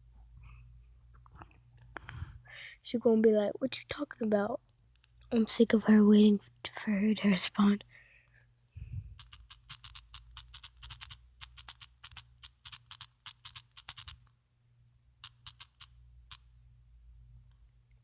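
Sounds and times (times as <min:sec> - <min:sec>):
faint low hum: 0:00.0 - 0:18.0
keyboard key clicks: 0:09.2 - 0:14.2, 0:15.2 - 0:16.4.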